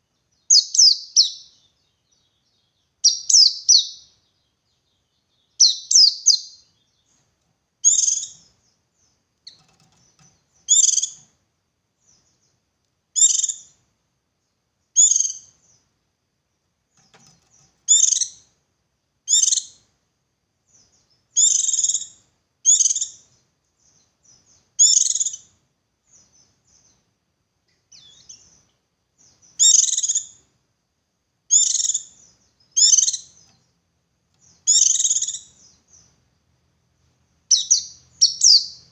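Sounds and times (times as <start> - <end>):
bird chirping high phrases: 0.2 - 7.2, 7.8 - 11.3, 13.2 - 13.8, 15.0 - 15.8, 17.9 - 18.5, 19.3 - 19.8, 20.7 - 27.0, 27.9 - 30.4, 31.5 - 33.6, 34.4 - 36.2, 37.4 - 38.9.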